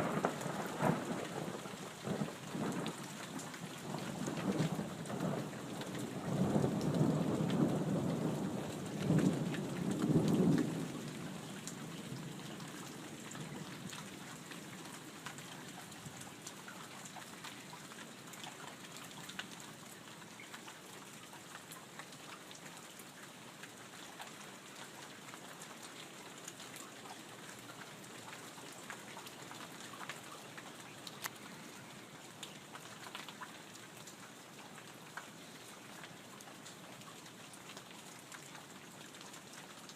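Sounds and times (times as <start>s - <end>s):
steady rain: 0.0s - 39.9s
water dripping: 15.2s - 39.9s.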